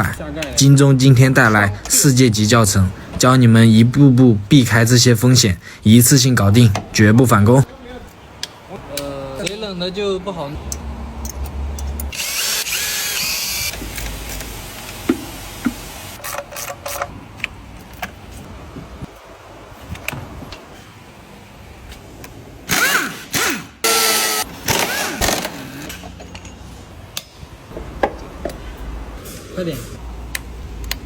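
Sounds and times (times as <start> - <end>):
tools and metal parts clicking: 10.7 - 12.4, 16.2 - 17.1, 24.7 - 27.4
handheld power tool running: 12.1 - 15.1, 22.7 - 25.6.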